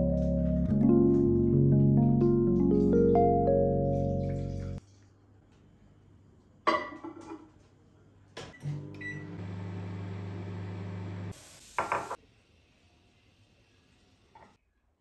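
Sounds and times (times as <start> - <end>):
microwave beep: 8.6 - 9.8
microwave oven humming: 8.6 - 11.3.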